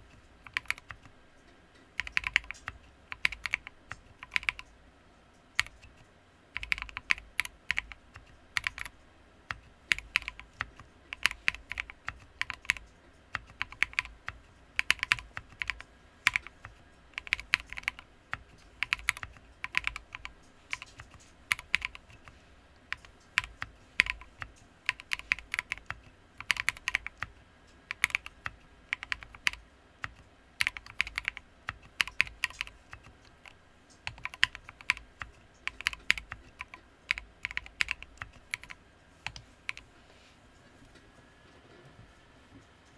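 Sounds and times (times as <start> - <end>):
mechanical keyboard typing: 0.0 - 4.8, 5.5 - 39.9.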